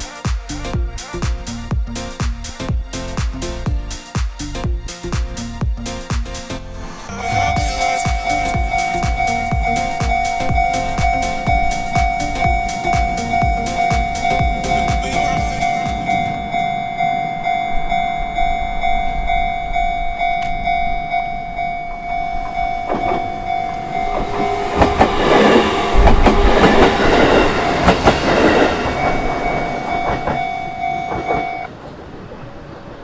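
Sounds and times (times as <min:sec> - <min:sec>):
level crossing bell ringing: 0:07.1 - 0:25.0, 0:28.4 - 0:31.7
train wheels clattering: 0:08.2 - 0:16.6, 0:24.0 - 0:31.6.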